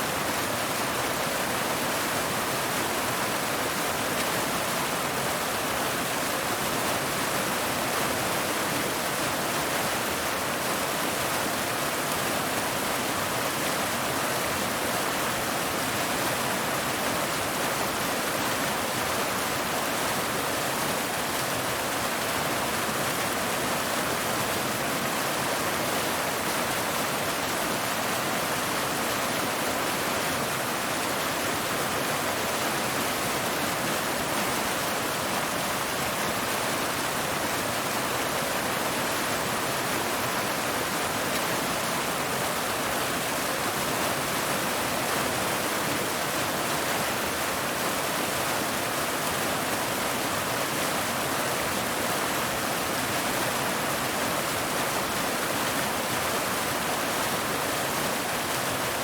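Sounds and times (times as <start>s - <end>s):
water cascading over rocks: 0.0s - 59.0s.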